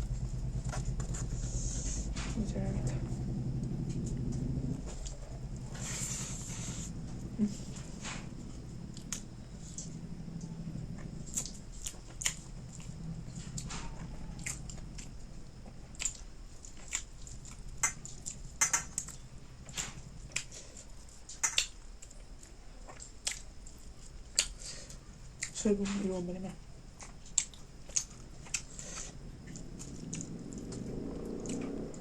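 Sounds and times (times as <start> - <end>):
person chewing food: 3.1 - 25.6, 26.8 - 32.0
wet mouth clicks and smacks: 24.3 - 24.6.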